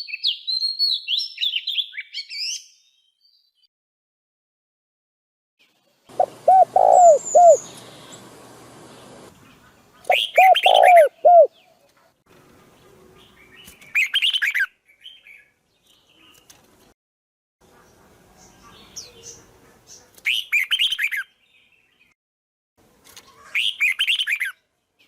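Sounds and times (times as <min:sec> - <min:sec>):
bird calls: 0:06.1 - 0:12.0, 0:23.2 - 0:24.6.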